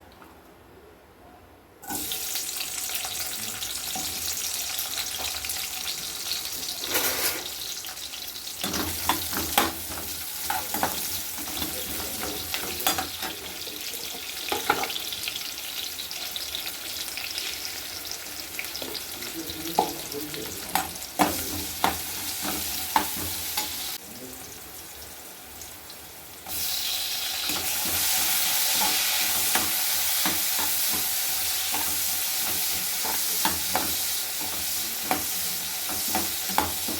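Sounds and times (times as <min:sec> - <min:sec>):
food sizzling in a pan: 0:01.8 - 0:36.9
spatula scraping a pan: 0:27.4 - 0:36.9.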